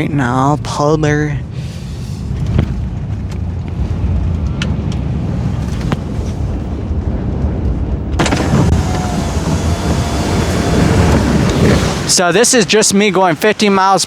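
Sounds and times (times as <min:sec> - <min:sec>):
car road and engine rumble: 0:00.0 - 0:14.0
wind noise rushing: 0:02.2 - 0:12.7.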